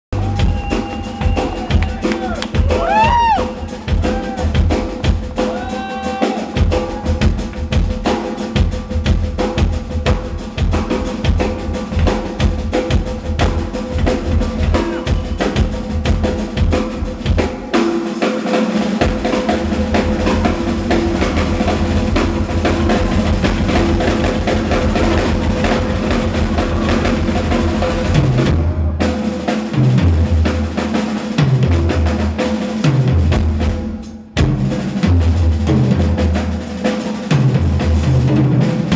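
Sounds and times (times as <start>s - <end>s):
rock drum kit playing fast: 0.1s - 38.9s.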